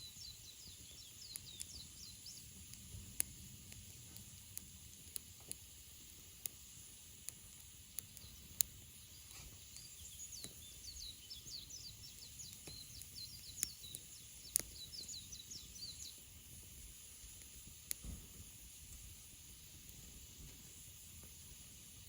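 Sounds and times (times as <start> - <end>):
bird chirping: 0.0 - 4.2, 7.9 - 16.4
campfire crackling and popping: 0.0 - 22.0.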